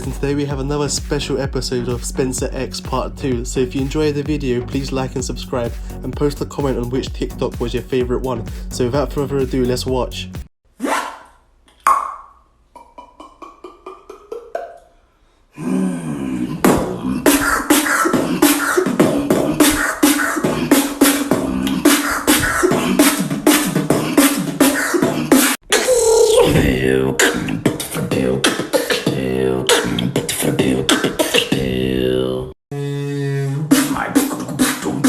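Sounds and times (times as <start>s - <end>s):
beatboxing mouth percussion: 0.0s - 10.5s, 12.8s - 14.9s, 16.5s - 35.0s
hummed bass line: 0.0s - 10.5s, 20.5s - 23.1s, 26.4s - 28.4s.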